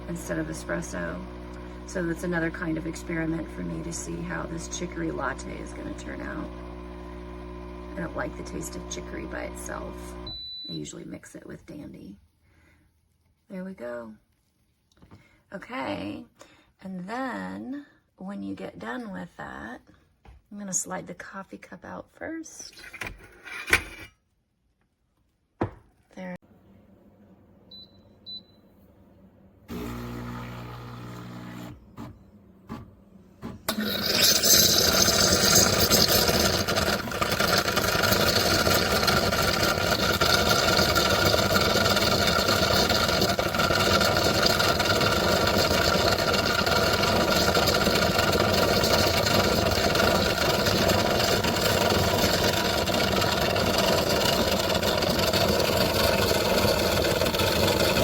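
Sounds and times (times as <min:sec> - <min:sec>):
espresso machine humming: 0:00.0 - 0:10.3, 0:29.7 - 0:31.8, 0:33.7 - 0:58.0
pump droning: 0:00.0 - 0:10.3, 0:29.7 - 0:31.8, 0:33.4 - 0:58.0.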